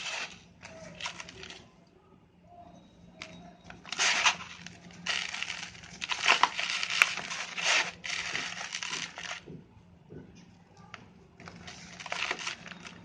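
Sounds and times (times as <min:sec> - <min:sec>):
sand-cement chunks being crushed: 0:00.0 - 0:01.6, 0:03.7 - 0:09.5, 0:11.4 - 0:13.0.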